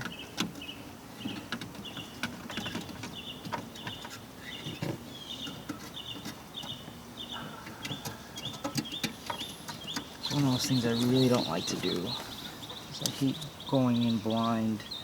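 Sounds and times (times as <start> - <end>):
bird high chirps: 0.1 - 15.0.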